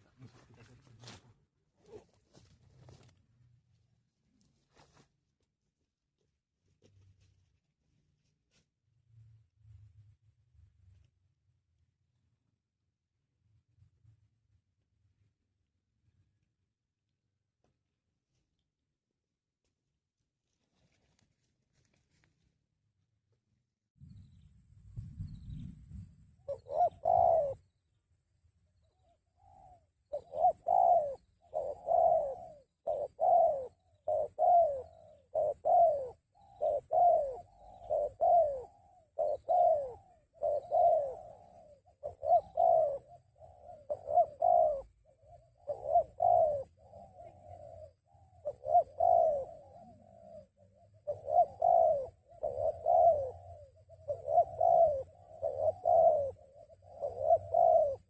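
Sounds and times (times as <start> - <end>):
dove cooing: 1.8 - 3.1, 25.2 - 58.0.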